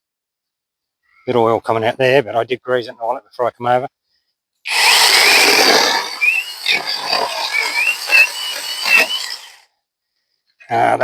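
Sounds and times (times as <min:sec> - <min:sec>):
electric chainsaw cutting log: 0:04.7 - 0:09.6.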